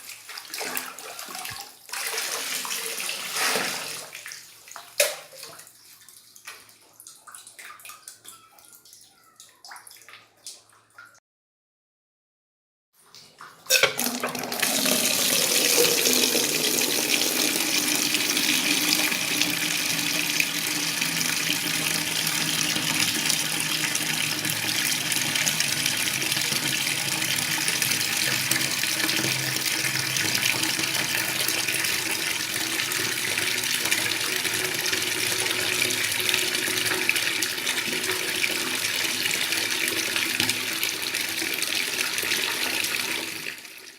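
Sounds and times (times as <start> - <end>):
water running from a tap: 13.7 - 43.9.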